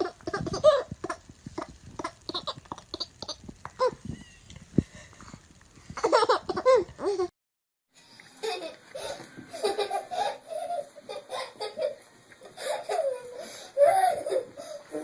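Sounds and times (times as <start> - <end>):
baby laughing: 0.0 - 4.0, 8.4 - 15.0.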